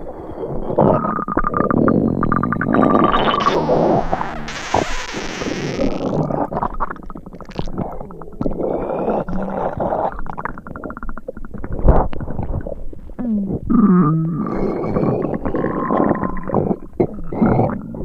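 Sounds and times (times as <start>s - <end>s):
stomach gurgling rumble: 0.0s - 18.0s
hiss falling in pitch: 3.2s - 6.1s.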